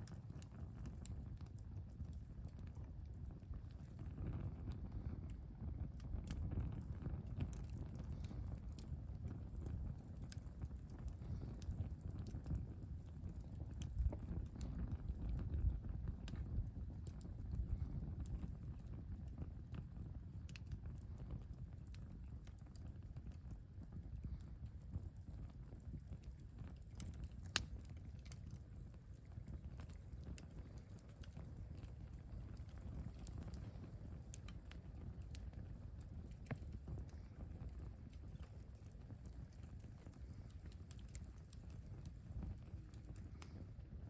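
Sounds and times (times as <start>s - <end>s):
campfire crackles and pops: 0.0s - 44.0s
wind buffeting microphone: 4.0s - 19.9s.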